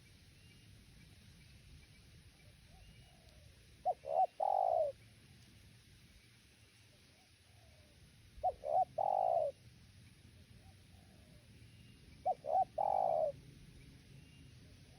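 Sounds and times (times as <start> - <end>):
dove cooing: 3.1 - 5.0, 7.2 - 9.6, 12.2 - 13.4.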